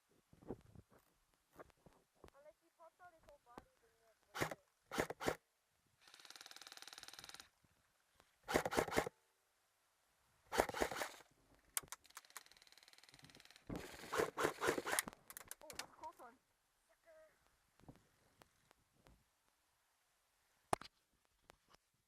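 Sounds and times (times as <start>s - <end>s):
airsoft gun full-auto burst: 4.3s - 5.4s, 8.5s - 9.1s, 10.5s - 11.2s, 13.8s - 15.1s.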